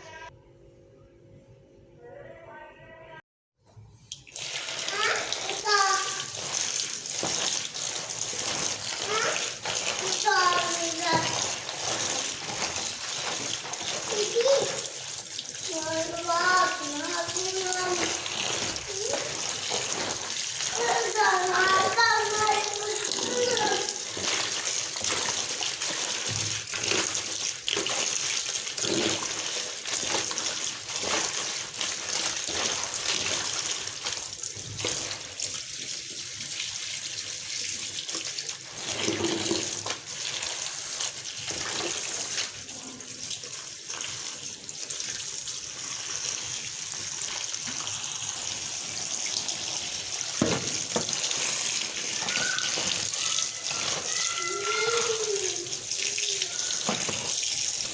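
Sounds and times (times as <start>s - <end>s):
tap water running into sink: 4.1s - 57.9s
objects clattering in sink: 5.4s - 35.6s, 38.1s - 42.9s, 50.3s - 55.4s, 56.7s - 57.9s.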